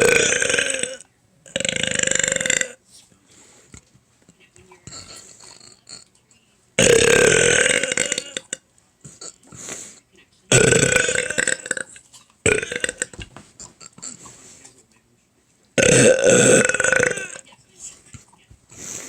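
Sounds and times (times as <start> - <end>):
person burping loudly: 0.0 - 2.8, 6.8 - 9.4, 10.5 - 14.2, 15.8 - 17.4.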